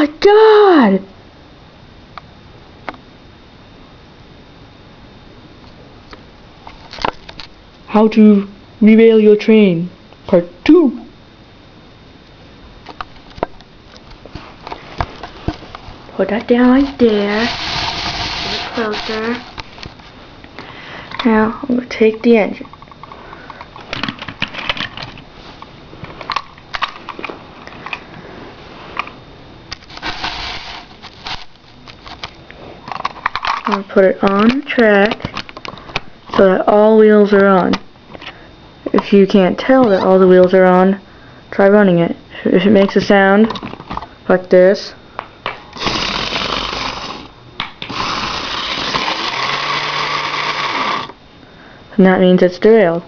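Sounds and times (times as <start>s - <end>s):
model train motor grinding: 16.5s - 19.6s, 29.9s - 31.4s, 45.8s - 51.2s.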